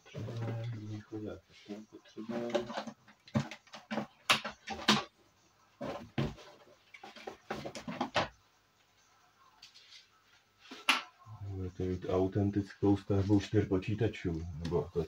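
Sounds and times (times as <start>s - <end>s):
computer parts clattering: 2.2s - 5.1s.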